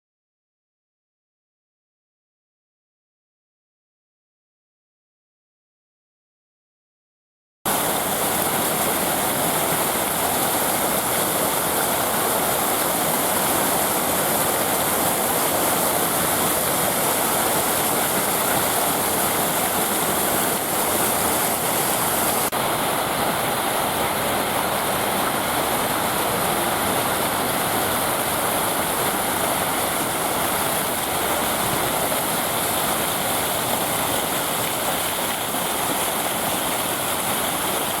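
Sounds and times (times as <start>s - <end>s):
water fountain splashing: 7.7s - 38.0s.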